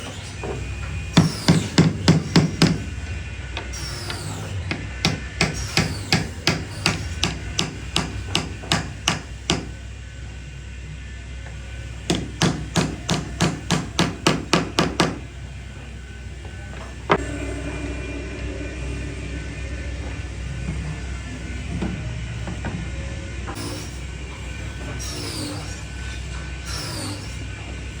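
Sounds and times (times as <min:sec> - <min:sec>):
hammer blows: 0:00.0 - 0:03.1, 0:03.7 - 0:09.8, 0:16.5 - 0:21.8.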